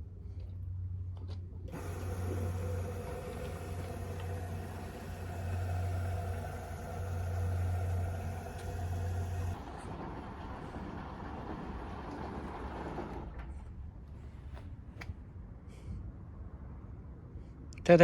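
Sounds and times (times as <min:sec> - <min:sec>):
washing machine motor humming: 0:01.7 - 0:14.2.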